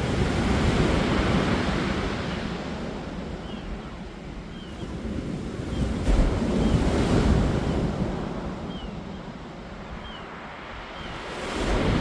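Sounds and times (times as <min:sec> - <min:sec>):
ocean surf breaking: 0:00.0 - 0:03.4, 0:09.6 - 0:12.0.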